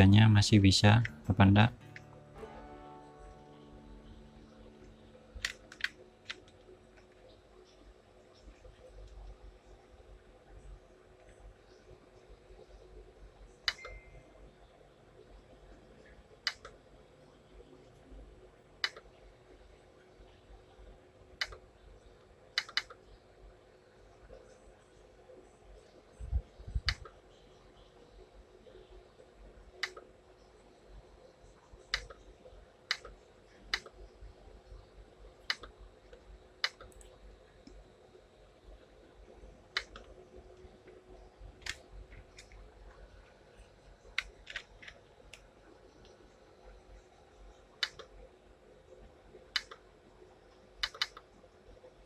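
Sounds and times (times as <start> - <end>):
faint steady hum: 0.0 - 52.0
sharp clicks: 22.6 - 23.0, 32.9 - 33.1, 36.6 - 37.8, 49.6 - 49.8, 50.8 - 51.2.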